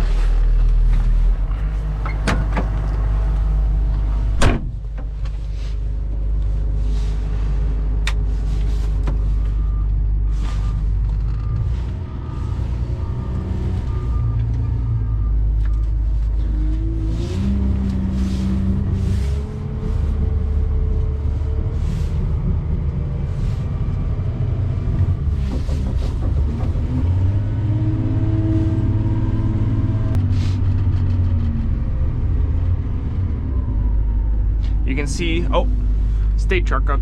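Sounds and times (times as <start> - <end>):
truck cab rumble: 0.0 - 37.0
rising engine tone: 10.6 - 37.0.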